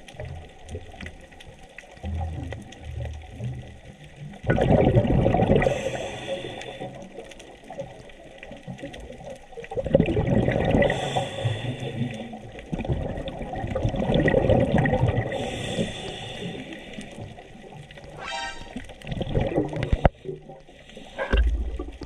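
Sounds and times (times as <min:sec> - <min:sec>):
exhaled bubbles rushing: 0:02.0 - 0:06.3, 0:08.8 - 0:11.1, 0:12.6 - 0:15.4, 0:17.2 - 0:20.5
regulator hiss on inhale: 0:05.6 - 0:07.2, 0:10.9 - 0:12.6, 0:15.3 - 0:17.4, 0:20.0 - 0:21.4
short buzzing tone: 0:18.2 - 0:18.9.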